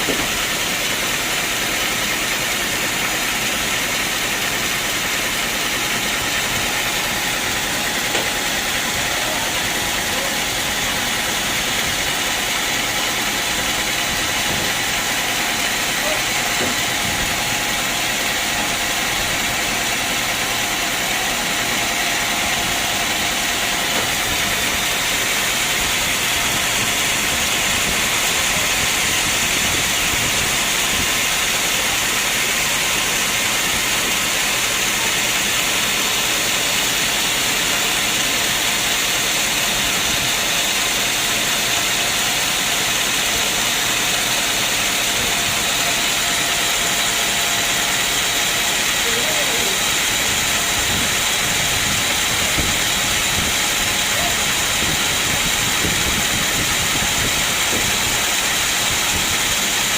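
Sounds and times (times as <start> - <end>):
sawmill saw running: 0.0 - 59.9.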